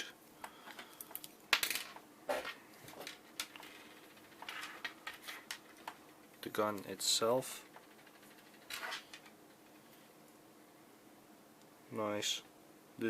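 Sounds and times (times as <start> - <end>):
plastic parts clicking and clattering: 0.4 - 6.5, 7.7 - 9.6.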